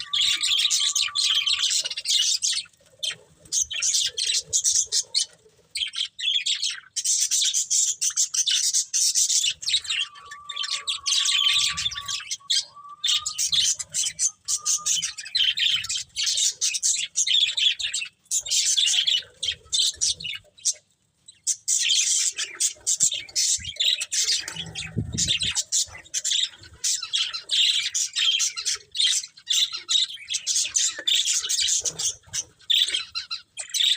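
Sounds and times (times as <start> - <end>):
budgerigars chattering: 0.0 - 2.7, 5.8 - 20.4
steady whistled note: 9.6 - 15.2.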